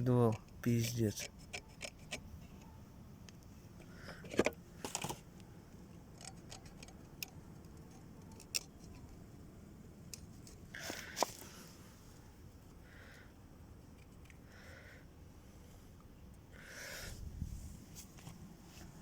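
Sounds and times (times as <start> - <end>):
metal parts clicking and clinking: 6.2 - 9.1.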